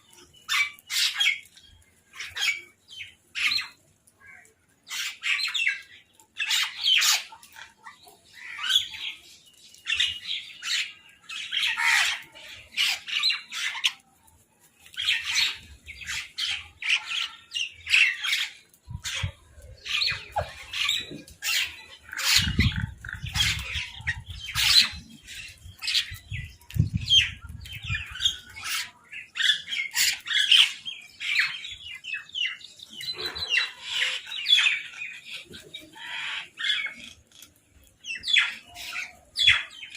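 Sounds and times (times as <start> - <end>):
crows and mynahs squawking: 10.6 - 14.0, 15.3 - 25.2, 32.2 - 37.4.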